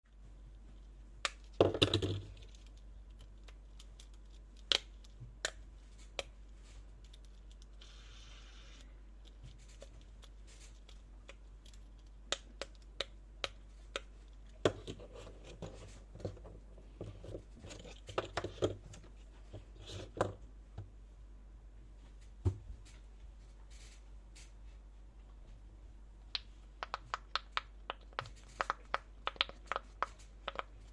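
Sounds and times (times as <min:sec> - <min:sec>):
rustling and scraping: 0:05.2 - 0:11.1, 0:14.7 - 0:20.4, 0:21.9 - 0:24.9
fidget toys clicking: 0:26.4 - 0:30.7.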